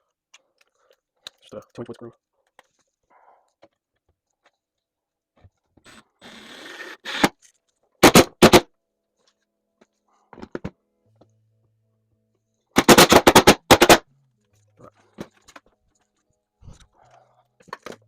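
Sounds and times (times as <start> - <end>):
power driver driving screw into wall: 5.9 - 7.4.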